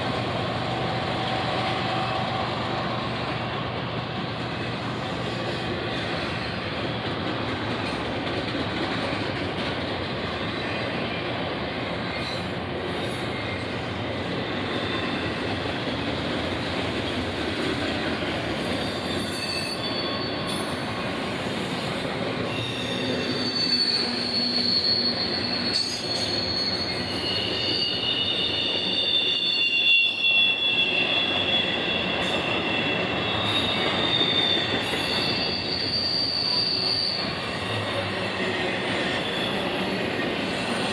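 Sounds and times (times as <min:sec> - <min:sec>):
freight train wheels rumbling: 0:00.0 - 0:40.9
high-pitched wheel squeal: 0:18.5 - 0:40.9.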